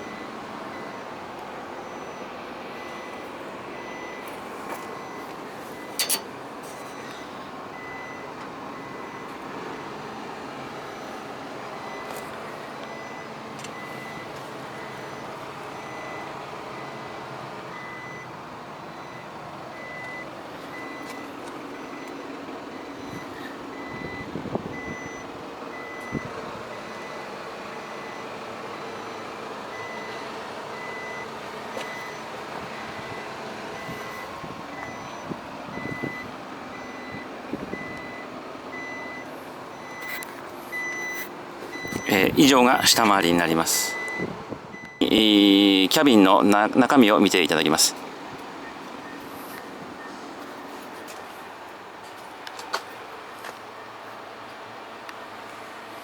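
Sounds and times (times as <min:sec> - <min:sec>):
high warning beeper: 0:40.8 - 0:48.0.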